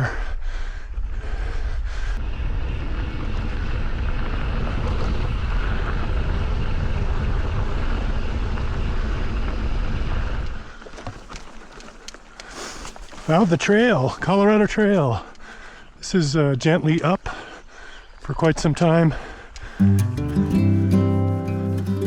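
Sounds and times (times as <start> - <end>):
wind buffeting microphone: 2.2 - 10.7.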